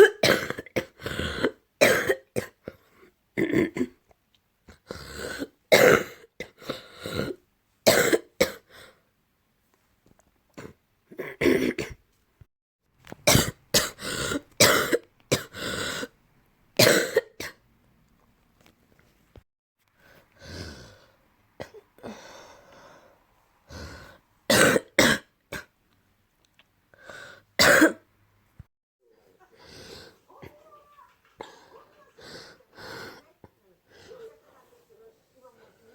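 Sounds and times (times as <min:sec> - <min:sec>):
person coughing with phlegm: 0:00.0 - 0:04.0, 0:05.2 - 0:08.7, 0:10.6 - 0:12.0, 0:13.2 - 0:16.1, 0:16.8 - 0:17.6, 0:24.5 - 0:25.7, 0:27.6 - 0:28.1.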